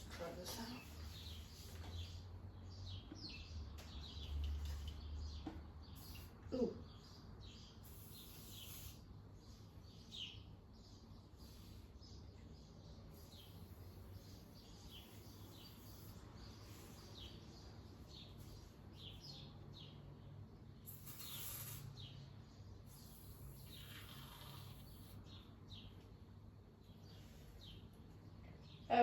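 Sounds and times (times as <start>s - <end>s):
high bird chirps: 20.8s - 22.3s.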